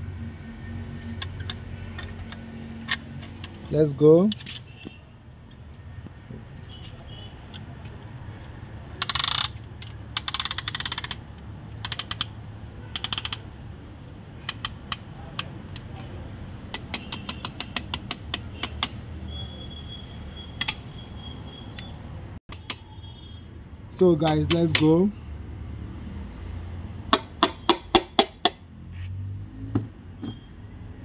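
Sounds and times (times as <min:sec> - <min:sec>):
ratchet clicking: 0:08.9 - 0:13.5, 0:14.4 - 0:16.1, 0:16.7 - 0:19.0
light metal taps and clicks: 0:24.2 - 0:25.0.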